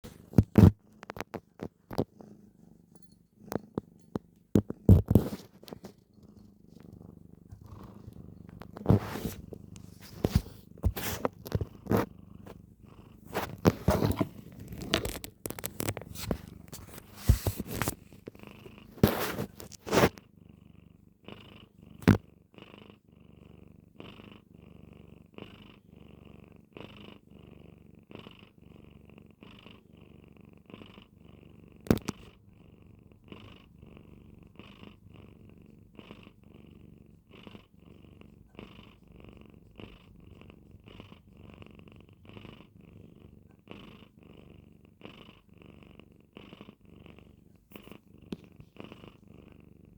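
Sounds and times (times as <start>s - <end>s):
pet snoring: 1.9s - 15.6s
rustling and knocks: 13.3s - 18.2s.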